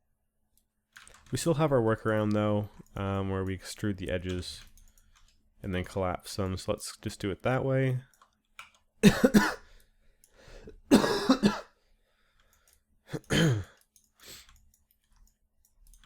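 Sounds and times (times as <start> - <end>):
man coughing: 9.0 - 9.7, 10.9 - 11.7, 13.1 - 13.8.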